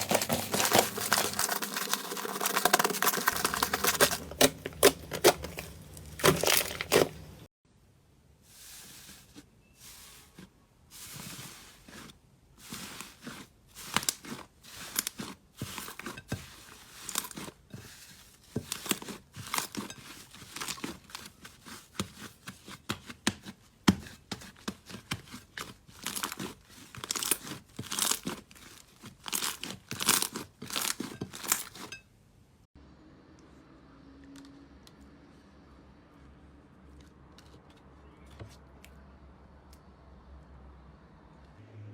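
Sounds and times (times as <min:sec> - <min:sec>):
slime crackling and squishing: 0:00.0 - 0:07.5, 0:10.2 - 0:31.9.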